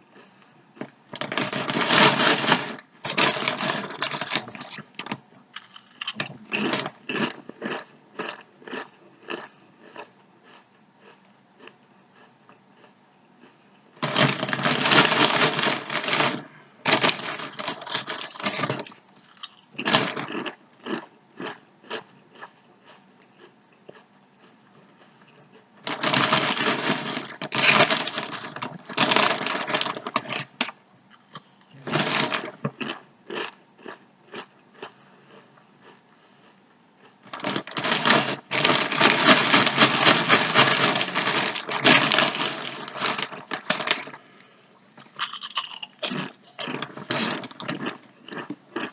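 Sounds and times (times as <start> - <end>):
chips being chewed crunching: 0.0 - 44.2, 45.0 - 48.9.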